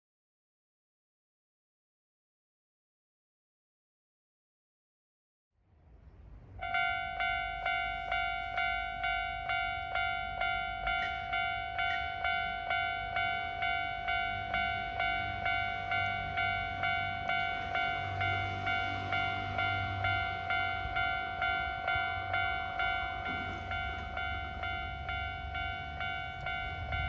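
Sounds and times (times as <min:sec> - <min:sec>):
level crossing electronic bell: 0:06.6 - 0:27.0.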